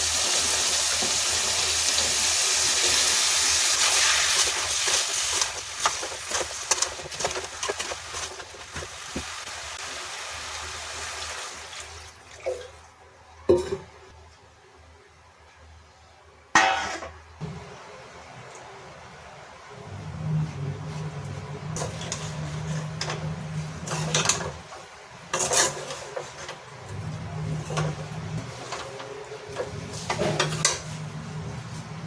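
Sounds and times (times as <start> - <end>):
food sizzling in a pan: 0.0 - 12.1.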